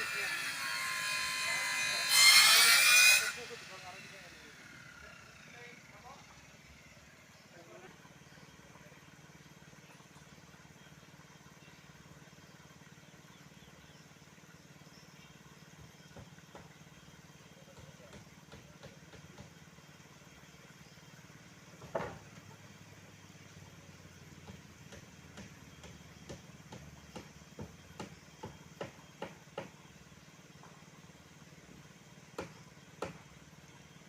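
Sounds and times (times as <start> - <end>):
faint engine humming: 3.2 - 34.0
sharp knocks and clanks: 17.7 - 19.6, 21.8 - 22.5, 24.4 - 29.8, 32.3 - 33.3.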